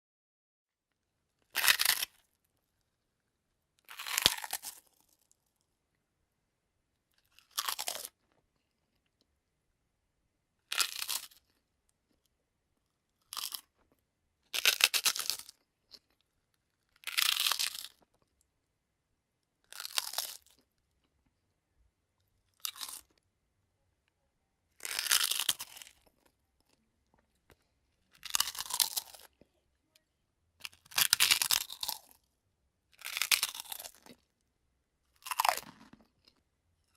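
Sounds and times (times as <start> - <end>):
crunching crisp crackers: 1.4 - 3.2, 3.8 - 5.8, 7.0 - 9.3, 10.6 - 18.5, 19.4 - 21.5, 22.2 - 23.2, 24.7 - 29.4, 30.6 - 36.9.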